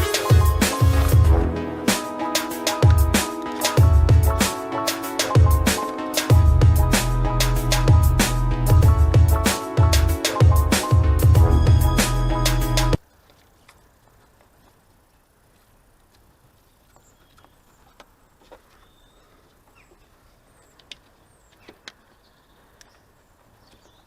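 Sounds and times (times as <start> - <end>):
background music: 0.0 - 13.0
small clicks and ticks: 13.0 - 18.2.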